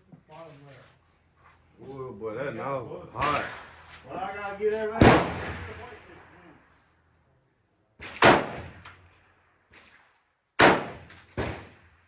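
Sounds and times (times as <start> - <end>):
loud gunshots with echo: 5.0 - 6.0, 8.0 - 8.8, 10.6 - 11.6.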